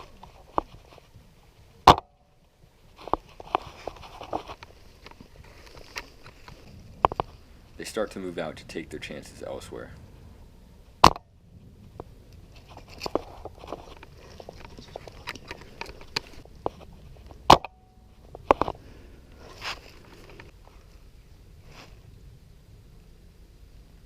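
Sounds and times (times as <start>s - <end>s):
dry vegetation rustling: 0.0s - 23.8s
sharp loud clicks: 11.0s - 11.3s.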